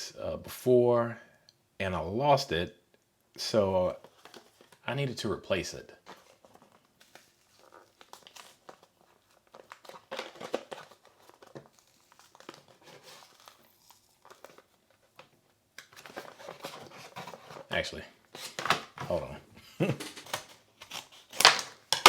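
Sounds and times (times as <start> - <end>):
packaging crinkling and rustling: 3.9 - 5.0, 6.0 - 19.3, 19.9 - 22.0.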